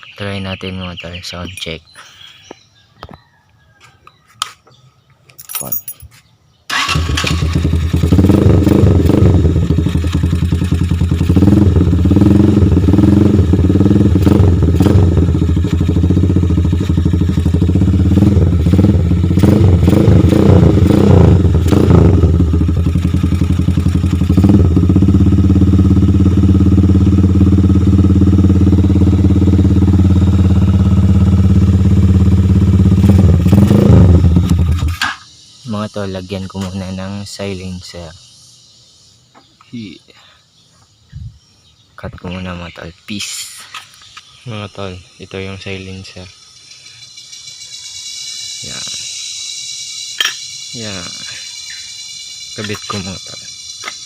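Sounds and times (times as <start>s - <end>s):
motorcycle engine revving and idling: 6.7s - 38.1s, 42.0s - 54.0s.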